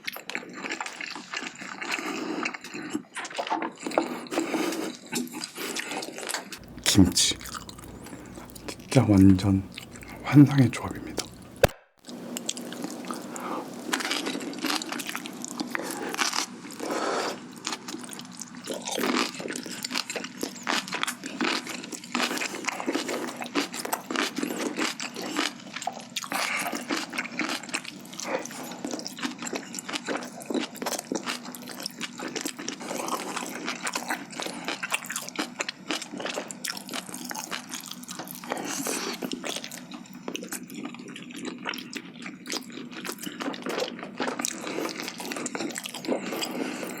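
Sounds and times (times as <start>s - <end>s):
chewing and crunching food: 0.0s - 47.0s.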